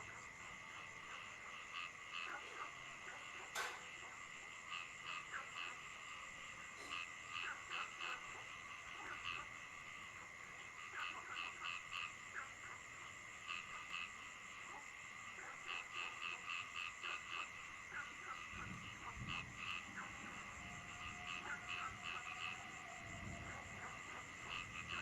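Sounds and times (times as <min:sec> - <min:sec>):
frogs croaking: 0:00.0 - 0:25.0.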